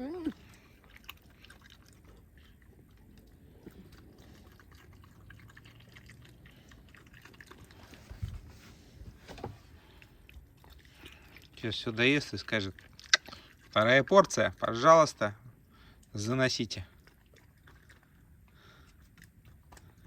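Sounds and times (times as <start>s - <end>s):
animal eating wet smacking: 0.0s - 8.5s, 9.7s - 14.8s, 15.5s - 20.0s
soft thumps: 8.0s - 9.7s.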